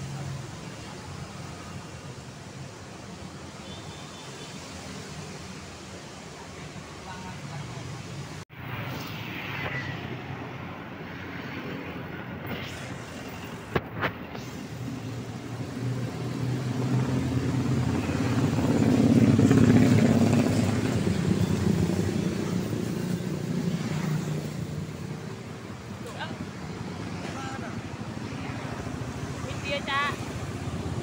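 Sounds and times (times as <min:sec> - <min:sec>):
vehicle passing by: 0:07.1 - 0:31.0.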